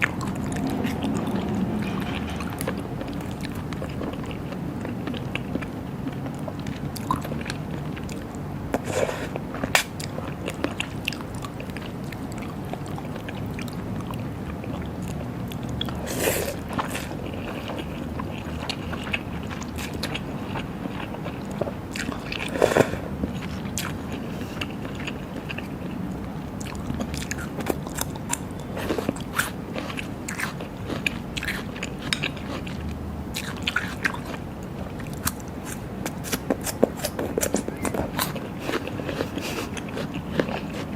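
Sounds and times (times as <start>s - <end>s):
close chewing and crunching: 0.0s - 40.9s
low background hum: 0.0s - 40.9s.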